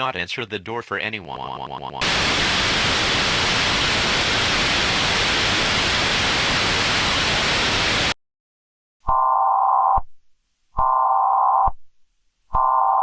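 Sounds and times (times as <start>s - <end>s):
loud static hiss: 2.0s - 8.2s.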